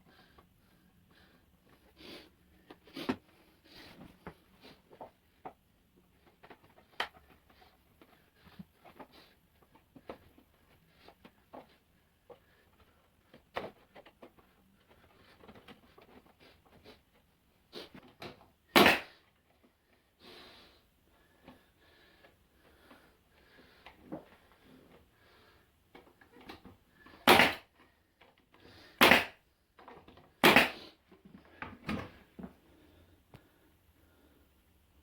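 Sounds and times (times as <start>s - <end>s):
nail gun firing: 18.8s - 19.2s, 27.2s - 27.7s, 29.0s - 29.4s, 30.4s - 30.9s.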